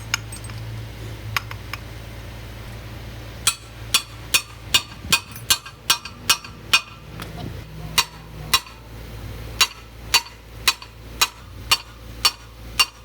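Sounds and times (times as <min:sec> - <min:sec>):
hammer striking metal: 0:03.4 - 0:07.0, 0:08.0 - 0:08.8, 0:09.6 - 0:13.0.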